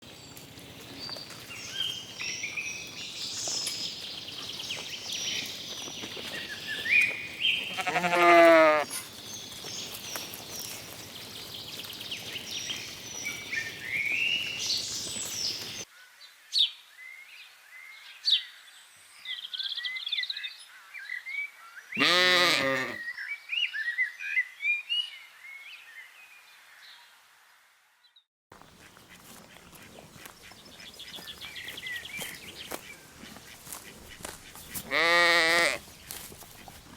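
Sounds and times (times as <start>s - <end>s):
songbird chirping: 0.0s - 36.9s
lambs bleating: 7.7s - 8.9s, 22.0s - 23.0s, 34.8s - 35.8s.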